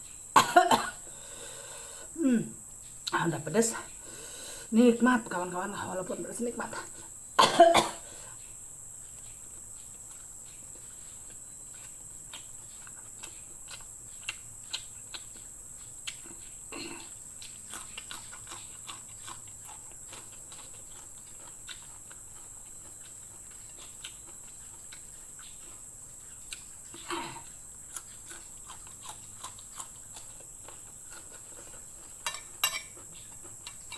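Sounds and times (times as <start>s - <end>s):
steady high-pitched hiss: 0.0s - 33.9s
chewing clicks and mouth smacks: 9.2s - 33.9s.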